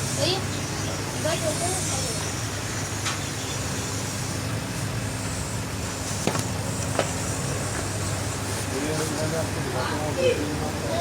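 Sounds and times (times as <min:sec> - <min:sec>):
steady machine hum: 0:00.0 - 0:11.0.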